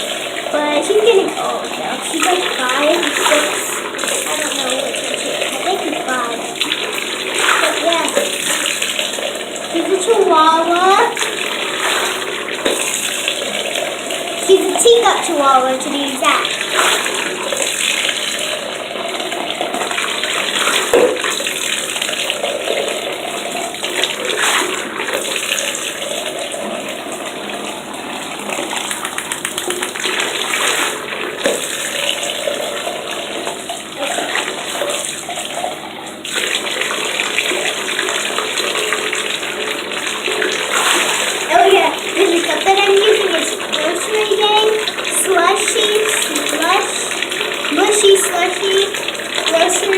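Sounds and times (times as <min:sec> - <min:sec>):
tap water running into bath: 0:00.0 - 0:49.9.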